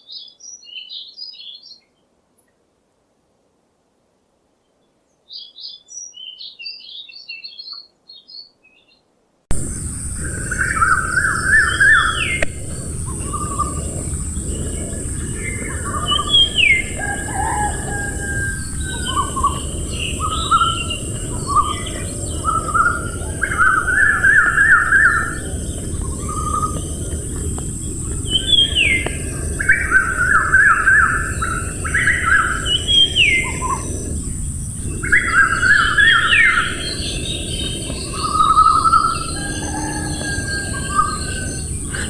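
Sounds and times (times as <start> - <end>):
songbirds singing: 0.0 - 2.0, 5.1 - 42.0
low rushing background: 9.5 - 42.0
thin high hiss: 9.5 - 42.0.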